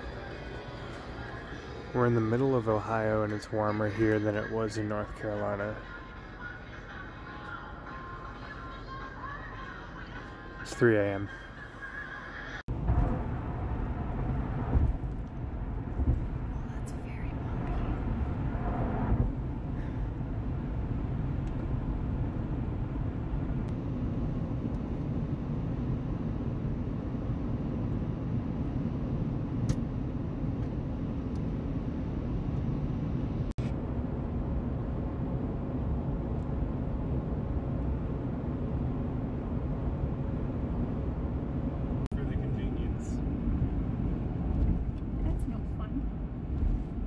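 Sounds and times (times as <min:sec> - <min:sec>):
car engine: 0:12.6 - 0:25.1
tyre and road noise: 0:12.7 - 0:23.7.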